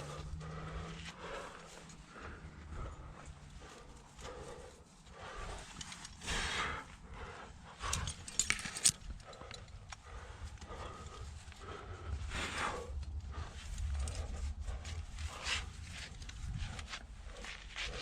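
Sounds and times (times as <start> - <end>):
metallic clicks of climbing gear: 5.5 - 6.4, 7.7 - 11.6, 13.0 - 17.0
scraping and rustling against rock: 13.4 - 18.0.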